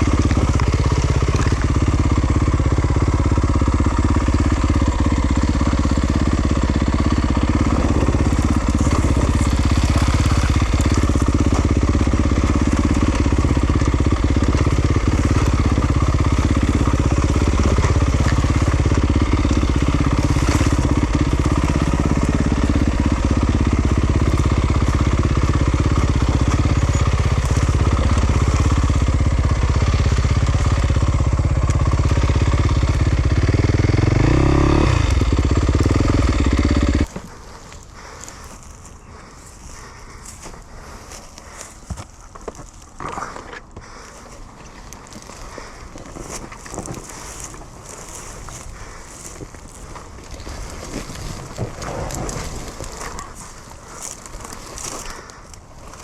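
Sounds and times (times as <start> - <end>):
dirt bike engine running: 0.0 - 56.0.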